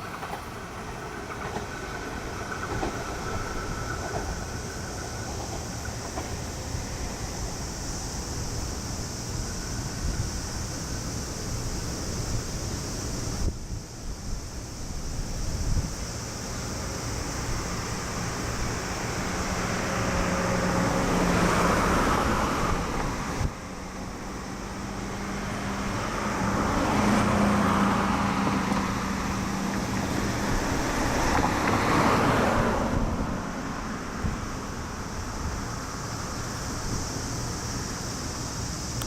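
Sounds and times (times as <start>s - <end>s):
vehicles passing: 15.8s - 38.8s.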